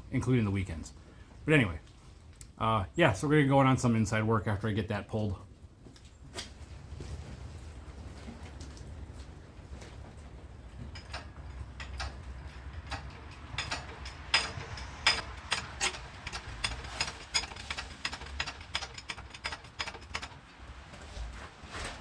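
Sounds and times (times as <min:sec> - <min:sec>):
low steady rumble: 0:06.7 - 0:22.0
metal tools clicking and clinking: 0:10.7 - 0:20.7.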